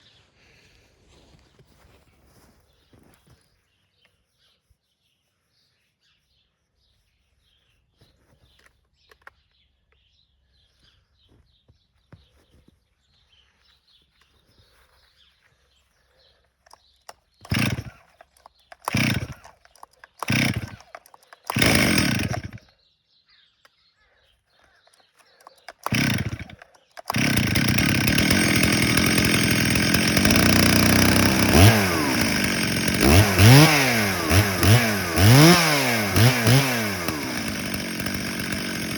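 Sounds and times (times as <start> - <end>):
starter cord pulls: 16.7 - 22.6, 24.9 - 38.9
chainsaw engine running and revving: 17.4 - 18.0, 18.8 - 19.5, 20.2 - 22.6, 25.6 - 38.9.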